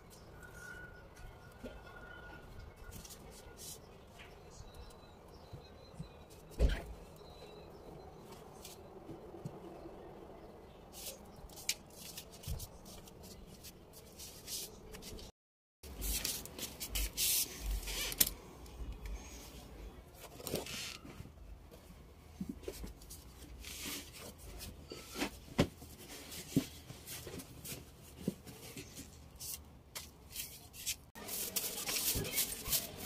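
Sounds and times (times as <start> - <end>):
rubbing while wiping: 30.4 - 33.0.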